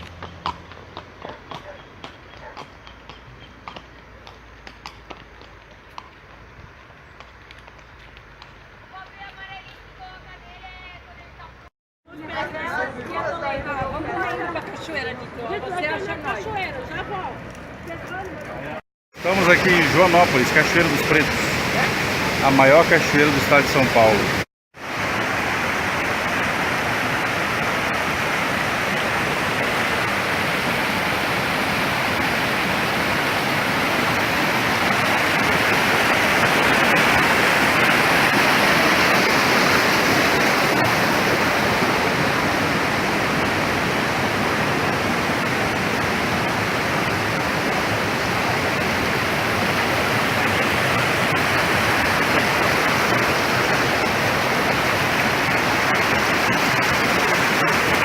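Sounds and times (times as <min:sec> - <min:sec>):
waterfall rushing: 0:19.2 - 0:58.0.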